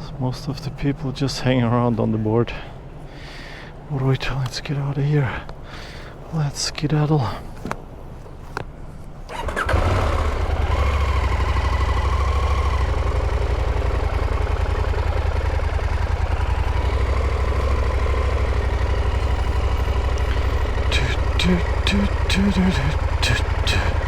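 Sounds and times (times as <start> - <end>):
motorcycle engine starting and idling: 9.3 - 24.0.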